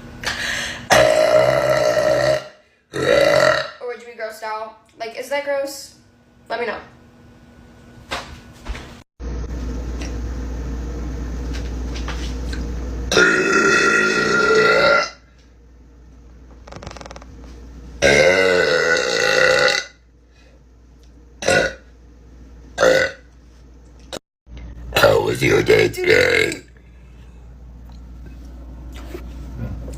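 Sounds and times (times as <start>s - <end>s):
steady low hum: 0.0s - 29.9s
woman burping loudly: 0.9s - 3.8s, 13.1s - 15.2s, 18.0s - 20.0s, 21.4s - 21.8s, 22.8s - 23.2s.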